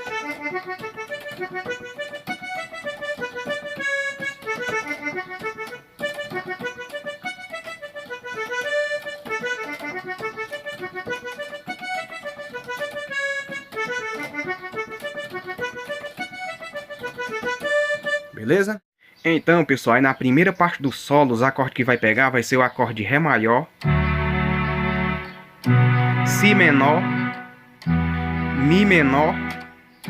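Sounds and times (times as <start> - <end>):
electronic keyboard melody: 0.0 - 18.4, 23.8 - 30.0.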